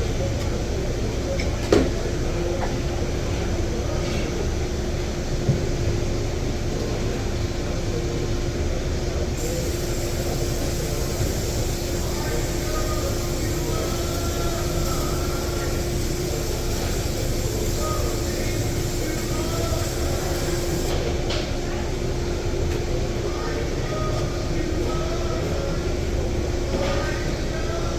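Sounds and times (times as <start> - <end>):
machine running with low hum: 9.4 - 21.2.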